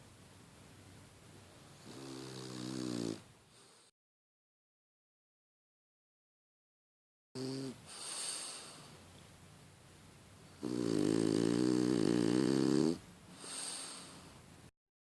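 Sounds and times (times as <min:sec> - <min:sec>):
dog snoring: 0:01.8 - 0:03.9, 0:07.4 - 0:08.9, 0:10.6 - 0:14.2.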